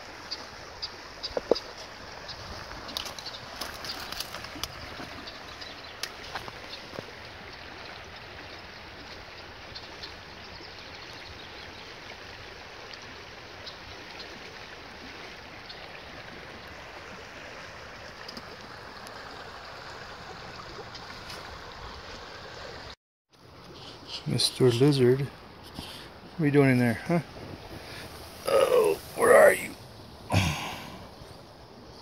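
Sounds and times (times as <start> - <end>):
stream flowing: 0.0 - 32.0.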